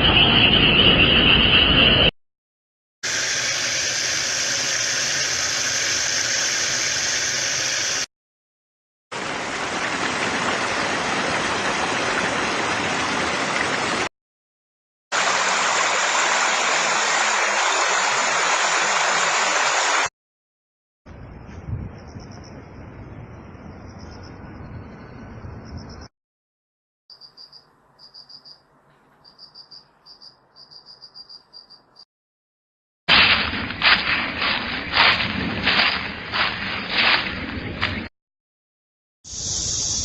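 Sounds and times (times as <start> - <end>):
running water rushing: 9.1 - 14.1, 15.1 - 20.1, 33.1 - 38.0.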